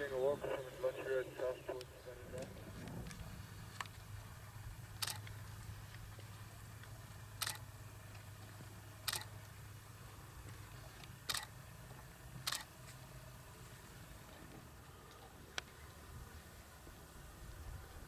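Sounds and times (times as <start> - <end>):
low steady hum: 0.0 - 18.0
camera shutter clicking: 5.0 - 5.3, 7.4 - 7.7, 9.1 - 9.3, 11.3 - 11.5, 12.4 - 12.7.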